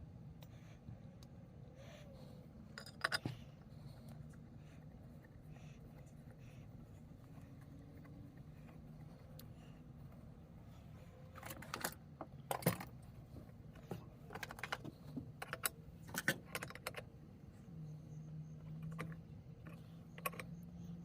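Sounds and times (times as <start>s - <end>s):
low steady hum: 0.0s - 21.0s
small metal parts clicking: 2.7s - 3.6s, 14.3s - 17.1s.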